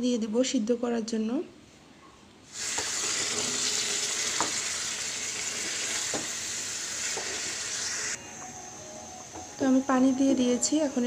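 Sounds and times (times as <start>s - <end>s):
meat sizzling in hot oil: 2.5s - 8.2s.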